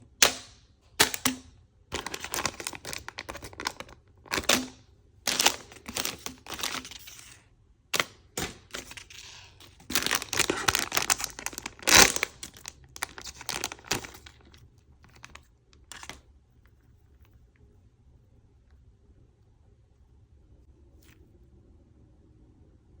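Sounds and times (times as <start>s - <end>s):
packaging tearing crackles: 1.9s - 7.1s, 8.0s - 16.3s
packaging crinkling and rustling: 1.9s - 7.4s, 8.0s - 16.3s.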